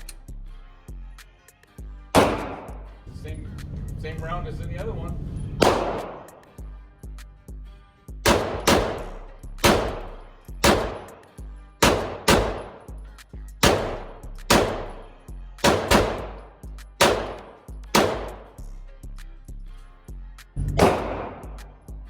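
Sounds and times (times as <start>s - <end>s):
background music with bass line: 0.0s - 22.0s
pistol shots with echo: 2.2s - 2.8s, 5.6s - 6.5s, 8.2s - 13.0s, 13.6s - 18.6s, 20.8s - 21.7s.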